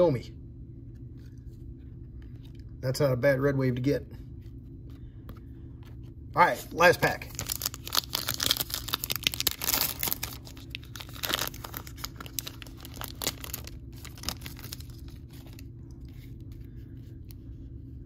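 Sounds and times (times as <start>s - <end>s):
foil wrapper tearing and crinkling: 7.0s - 15.7s.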